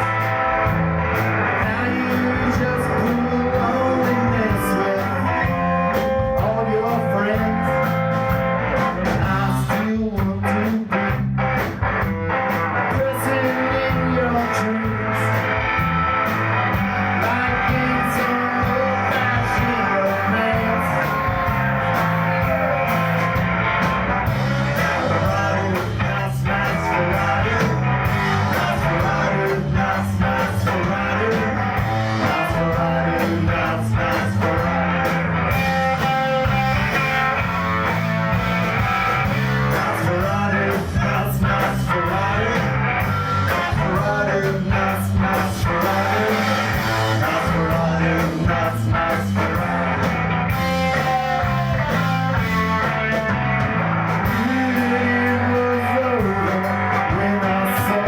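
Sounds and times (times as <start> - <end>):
bass line: 0.0 - 58.0
drums: 0.0 - 58.0
guitars: 0.0 - 58.0
person singing: 1.4 - 8.1, 8.8 - 11.2, 12.8 - 15.7, 16.8 - 23.4, 24.2 - 38.1, 39.2 - 52.4, 54.2 - 58.0.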